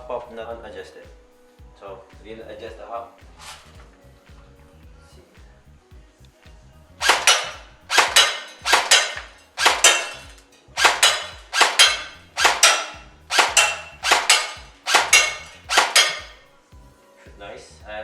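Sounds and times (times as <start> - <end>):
airsoft rifle shots: 7.0 - 16.4.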